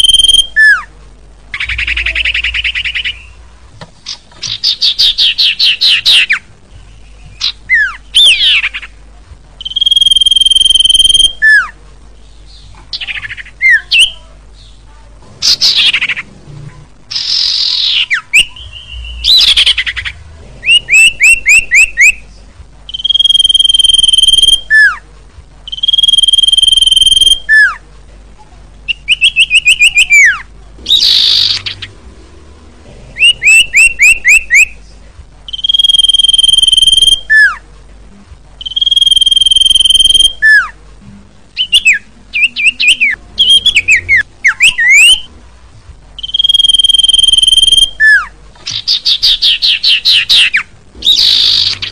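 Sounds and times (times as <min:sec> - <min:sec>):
bird singing whistles: 0:00.0 - 0:00.9, 0:07.3 - 0:08.7, 0:09.6 - 0:11.7, 0:17.1 - 0:20.0, 0:20.6 - 0:22.2, 0:22.9 - 0:25.0, 0:25.7 - 0:27.8, 0:28.9 - 0:31.8, 0:33.2 - 0:34.7, 0:35.5 - 0:37.6, 0:38.6 - 0:40.7, 0:41.6 - 0:45.3, 0:46.2 - 0:51.9.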